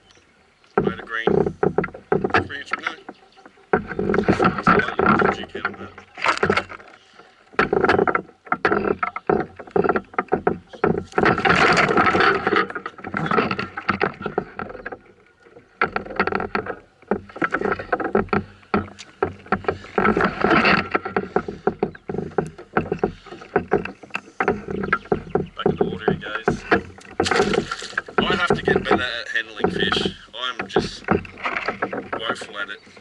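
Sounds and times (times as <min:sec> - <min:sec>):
knocks and clatter on canoe hull: 0:00.0 - 0:33.0
rustling noise: 0:09.8 - 0:33.0.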